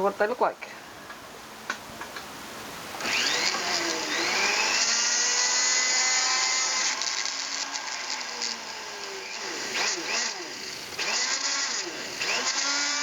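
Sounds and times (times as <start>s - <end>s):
rotary tool motor whine: 3.0s - 13.0s.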